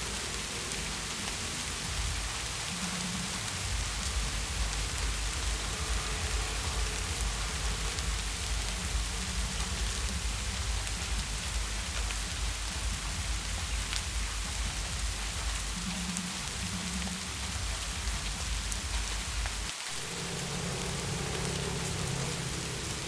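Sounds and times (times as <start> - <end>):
heavy rain falling: 0.0 - 23.0.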